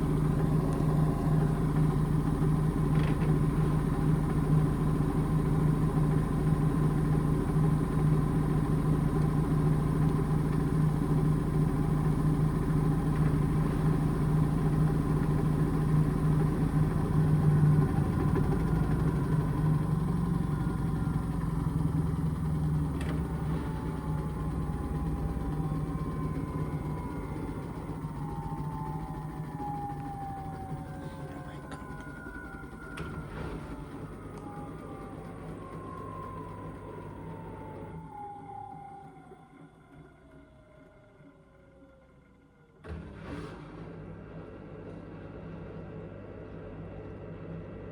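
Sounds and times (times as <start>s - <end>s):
washing machine drum spinning: 0.0s - 37.8s
motor whine falling in pitch: 0.0s - 40.0s.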